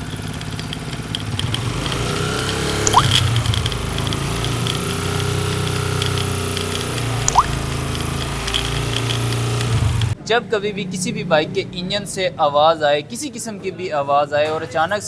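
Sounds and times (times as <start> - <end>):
light irregular ticking: 0.0 - 10.2
motorcycle engine running: 0.0 - 10.2.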